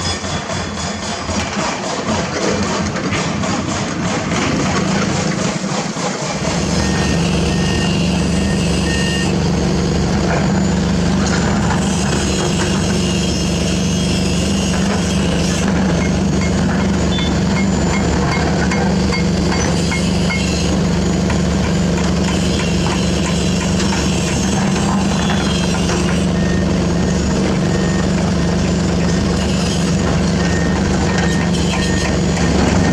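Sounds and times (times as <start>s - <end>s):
diesel excavator engine running: 0.0s - 32.9s
back-up alarm beeping: 6.6s - 9.4s, 16.0s - 18.3s, 26.0s - 28.6s, 30.2s - 32.9s.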